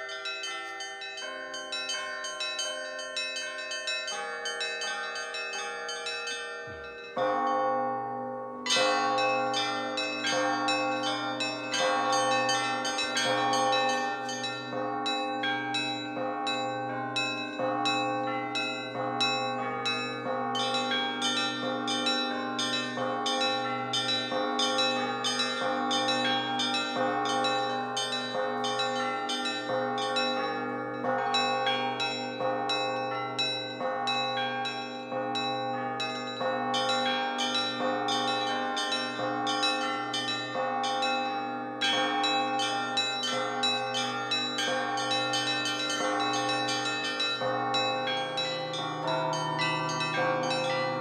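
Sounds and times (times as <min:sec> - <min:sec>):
deeper bells ringing: 0:00.0 - 0:51.0
large bell humming: 0:34.0 - 0:51.0.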